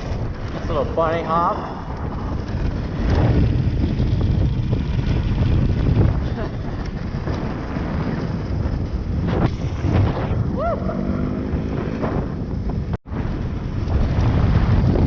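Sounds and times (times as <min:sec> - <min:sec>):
tyres rattling over dirt: 0:00.0 - 0:10.2
wind on microphone: 0:00.0 - 0:15.0.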